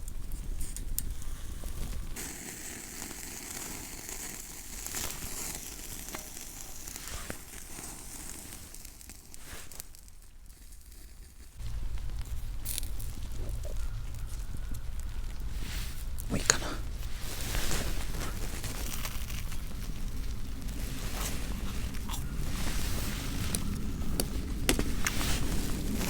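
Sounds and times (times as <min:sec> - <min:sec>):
campfire crackling and popping: 0:00.0 - 0:26.0
low rumble: 0:11.6 - 0:26.0.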